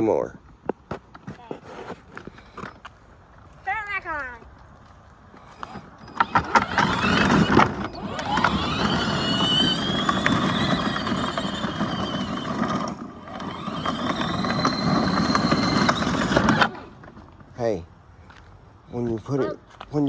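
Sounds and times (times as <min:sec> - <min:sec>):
electric motors and gearbox whining: 0:05.4 - 0:17.5
tyres rumbling: 0:05.4 - 0:18.1.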